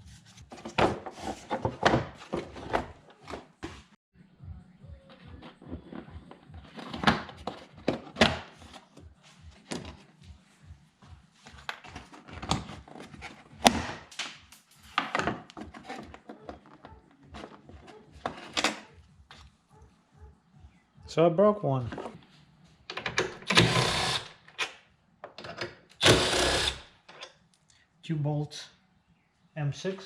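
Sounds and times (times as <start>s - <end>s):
plastic parts knocking and clacking: 15.0s - 18.9s.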